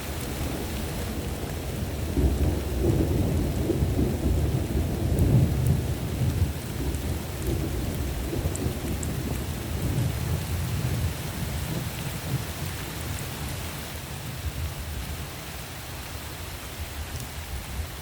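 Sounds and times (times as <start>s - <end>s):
steady rain: 0.0s - 18.0s
thunder rumbling: 0.4s - 13.2s.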